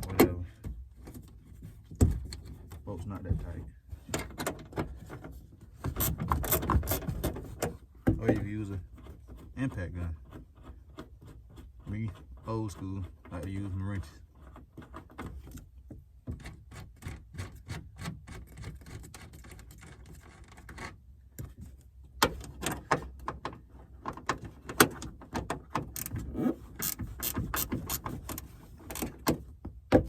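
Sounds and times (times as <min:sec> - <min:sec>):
socket ratchet clicking: 0:25.8 - 0:26.2, 0:26.8 - 0:29.2.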